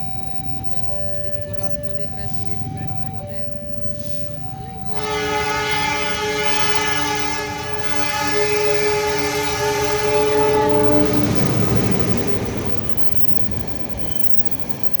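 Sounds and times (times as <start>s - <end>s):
rumble of passing train: 0.0s - 15.0s
train horn blast: 4.9s - 12.5s.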